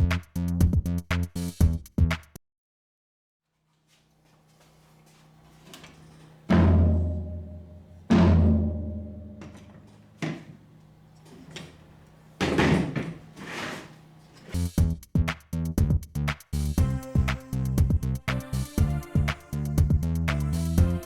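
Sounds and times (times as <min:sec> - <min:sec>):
low drum strikes ringing: 0:06.5 - 0:09.6, 0:16.8 - 0:18.2.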